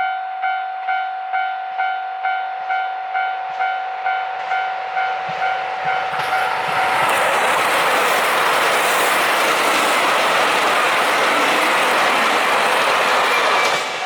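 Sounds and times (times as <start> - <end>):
diesel train rumbling past: 3.5 - 14.0.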